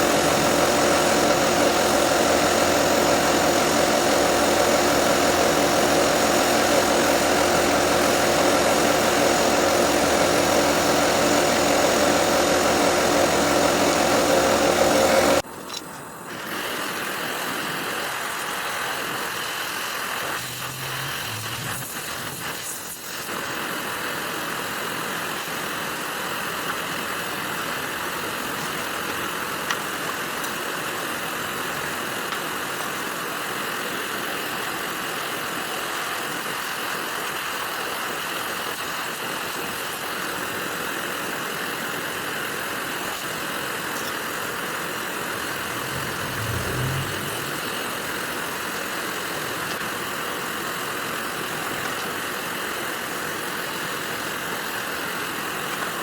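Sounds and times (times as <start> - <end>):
machinery hiss: 43.3 - 49.7
car engine idling: 45.2 - 48.2.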